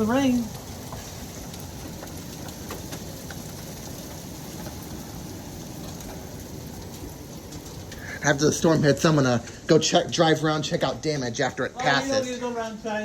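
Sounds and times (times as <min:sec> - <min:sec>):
heavy rain falling: 0:00.0 - 0:13.0
drops ticking on surfaces: 0:00.5 - 0:08.1.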